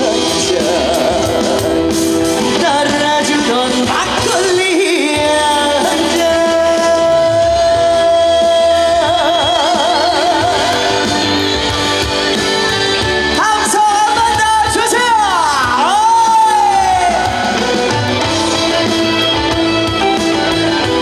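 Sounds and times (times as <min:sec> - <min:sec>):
trot music with singing: 0:00.0 - 0:21.0.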